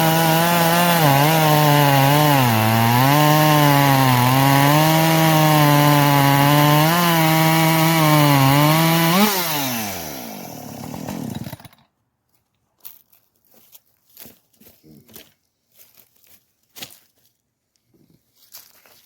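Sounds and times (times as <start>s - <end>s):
chainsaw cutting wood: 0.0s - 11.9s.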